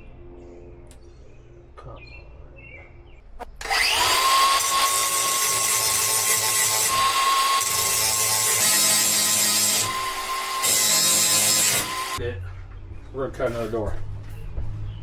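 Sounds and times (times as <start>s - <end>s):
power saw cutting panel: 3.6s - 12.2s.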